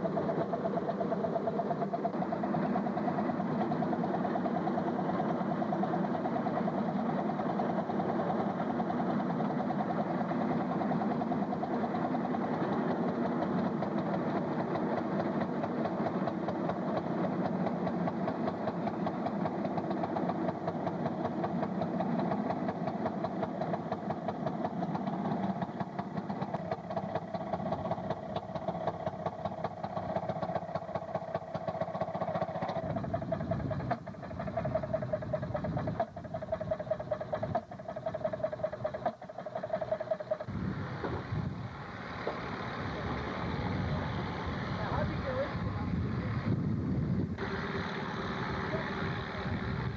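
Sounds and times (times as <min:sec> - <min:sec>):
small two-stroke engine running: 0:00.0 - 0:49.9.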